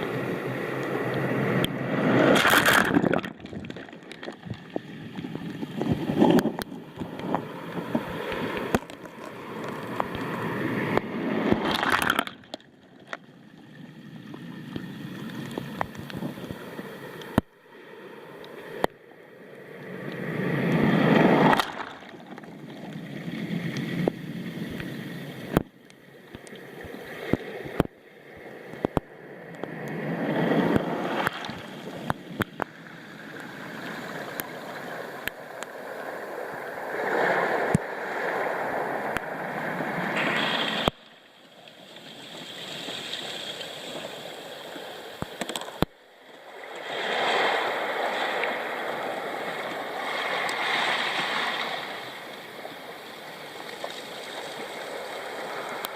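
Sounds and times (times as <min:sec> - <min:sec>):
waves washing on pebble beach: 0:00.0 - 0:12.6, 0:20.2 - 0:24.0, 0:30.0 - 0:41.3, 0:46.5 - 0:55.9
stones clicking and rattling: 0:02.4 - 0:04.8, 0:11.6 - 0:13.2.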